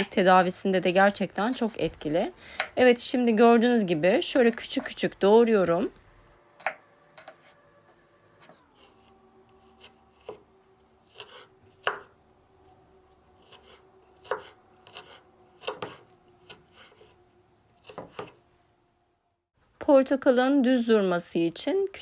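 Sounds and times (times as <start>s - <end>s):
knife chopping on board: 11.1s - 12.1s, 13.4s - 17.2s, 17.8s - 18.4s.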